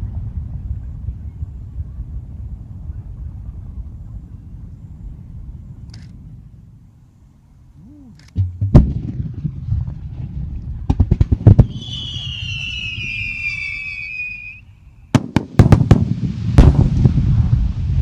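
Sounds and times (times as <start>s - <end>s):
fireworks bangs: 8.4s - 18.0s
fireworks crackling: 8.4s - 18.0s
firework whistle: 11.6s - 15.4s.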